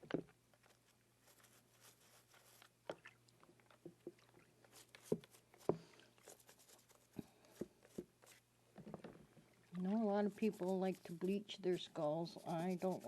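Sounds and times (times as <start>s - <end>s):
brushing and rubbing on bone: 0.6s - 2.8s, 4.6s - 8.5s, 9.9s - 13.0s.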